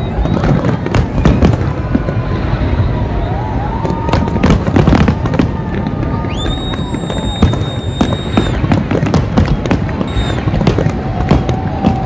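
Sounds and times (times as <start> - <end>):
high steady whistle: 0.0 - 1.6, 6.1 - 8.7, 9.4 - 10.6
continuous rumble: 0.0 - 12.0
fireworks bangs and crackles: 0.0 - 12.0
gliding whistle: 6.1 - 8.7, 9.4 - 10.6.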